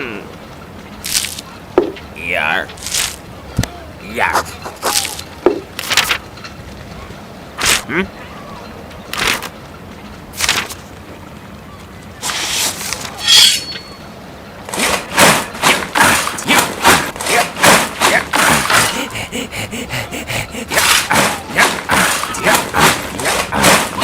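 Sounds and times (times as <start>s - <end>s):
cartoon knocks and thuds: 1.8s - 2.1s, 5.0s - 6.0s, 20.8s - 24.0s
wordless voice sounds: 2.1s - 2.8s, 4.0s - 5.2s.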